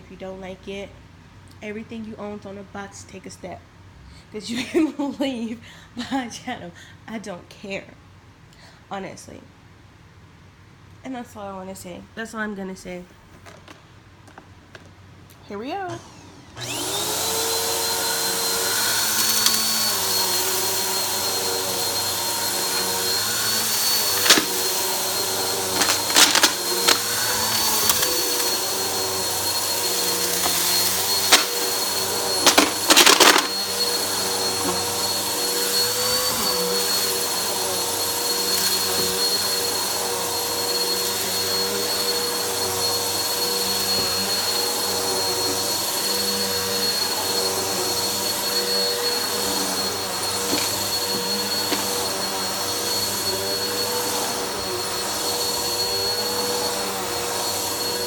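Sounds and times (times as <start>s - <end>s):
grit rattling up vacuum: 15.9s - 58.0s
vacuum cleaner motor whining: 15.9s - 58.0s.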